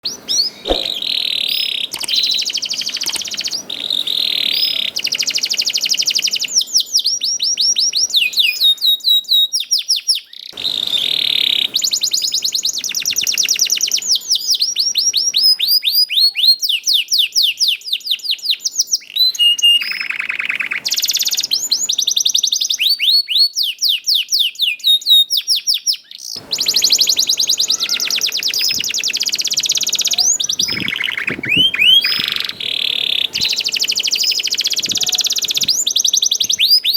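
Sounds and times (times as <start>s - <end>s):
canary singing trills: 0.0s - 36.9s.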